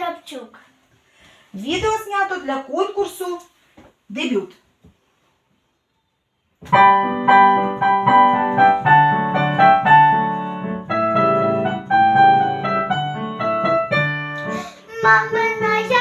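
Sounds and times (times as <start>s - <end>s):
keyboard playing chords and melody: 6.7s - 15.9s.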